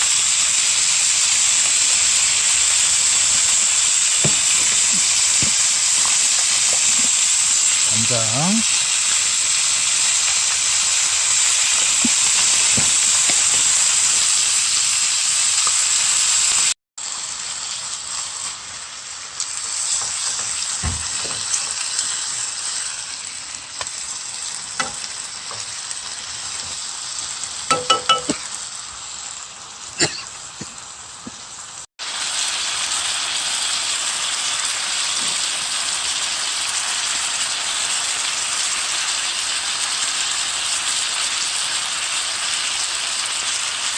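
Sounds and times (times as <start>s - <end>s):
pork sizzling in a hot pan: 0.0s - 43.9s
metal utensil clinking on pan: 27.7s - 28.4s.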